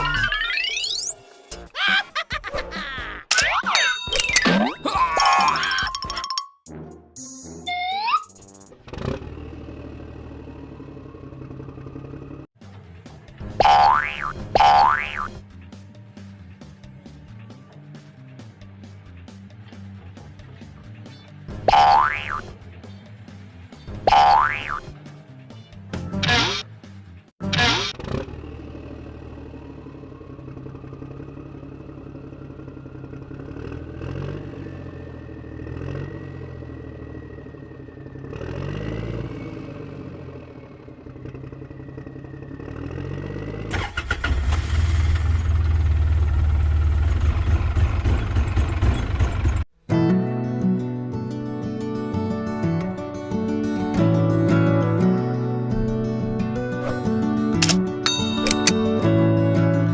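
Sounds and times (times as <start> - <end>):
vehicle engine with rising whine: 7.7 - 13.6, 27.9 - 49.6
cartoon boing: 13.6 - 15.3, 21.7 - 22.4, 24.1 - 24.8, 27.5 - 28.0.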